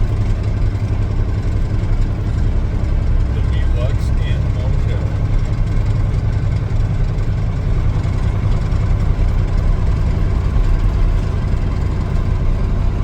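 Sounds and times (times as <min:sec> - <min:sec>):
vehicle engine rumble: 0:00.0 - 0:13.0.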